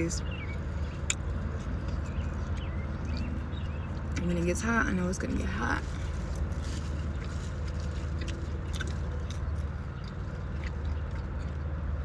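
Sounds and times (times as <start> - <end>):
steady low hum: 0.0 - 12.0
chewing and biting: 0.2 - 4.4, 5.3 - 12.0
wet squishy mouth sounds: 5.8 - 11.8.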